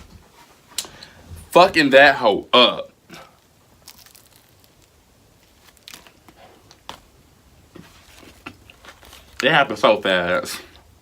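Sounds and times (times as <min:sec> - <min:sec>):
crinkling: 0:03.1 - 0:10.8
crunchy bites: 0:03.2 - 0:07.1.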